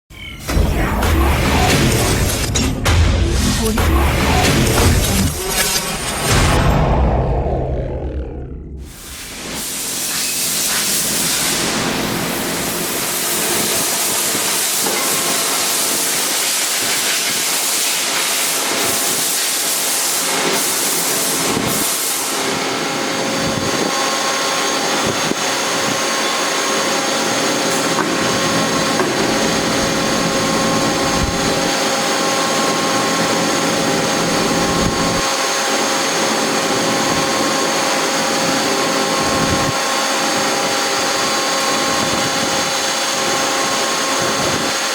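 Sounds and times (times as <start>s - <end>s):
machine hum with held tones: 0.1s - 10.7s.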